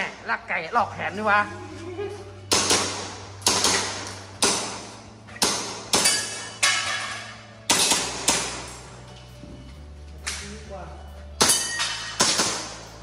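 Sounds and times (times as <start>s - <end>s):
airsoft pistol shots: 2.5s - 6.2s.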